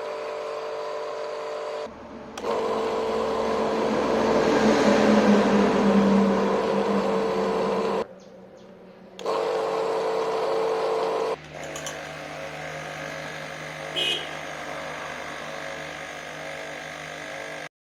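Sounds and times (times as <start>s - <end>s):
pressure washer motor humming: 0.0s - 8.0s, 9.1s - 17.7s
low hum: 1.9s - 10.4s.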